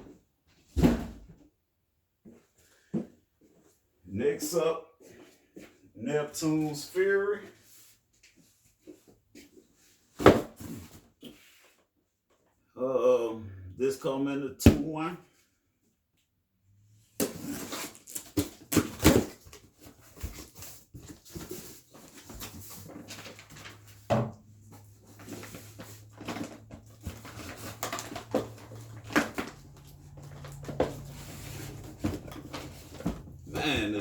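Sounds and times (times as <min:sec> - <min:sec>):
cardboard boxes knocking and thumping: 0:00.6 - 0:01.4, 0:10.2 - 0:11.1, 0:17.2 - 0:34.0.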